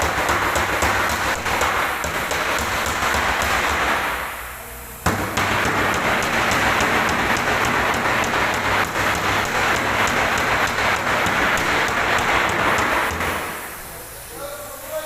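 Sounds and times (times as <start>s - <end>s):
loud steady hiss: 0.0s - 15.0s.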